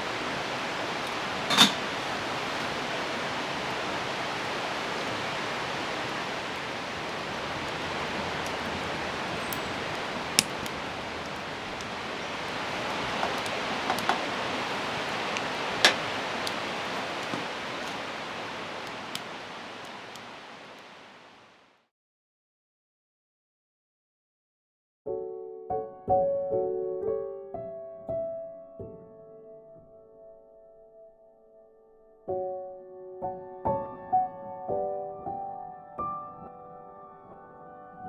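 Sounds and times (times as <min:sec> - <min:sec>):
steady rain hiss: 0:00.0 - 0:21.9.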